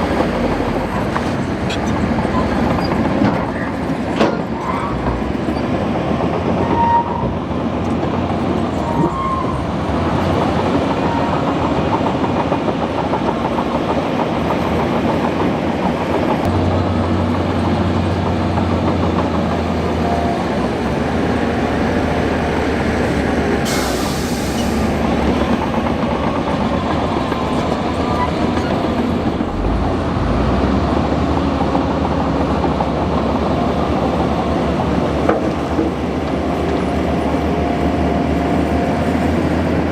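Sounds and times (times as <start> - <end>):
crawler tracks clattering: 0.1 - 21.5, 24.6 - 37.6
bulldozer diesel engine running: 16.2 - 39.9.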